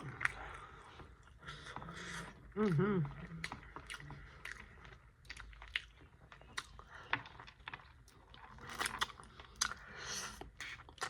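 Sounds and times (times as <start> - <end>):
chewing with wet smacking: 0.0 - 11.0.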